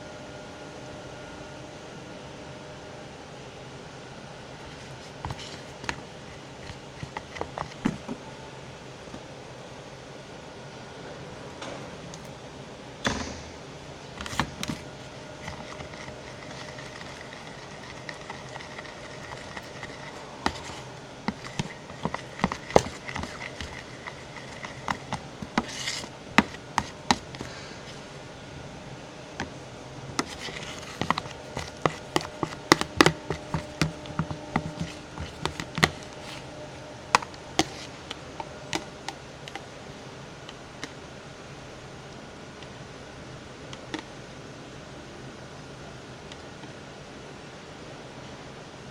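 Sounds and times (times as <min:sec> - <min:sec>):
steady hiss: 0:02.4 - 0:32.8.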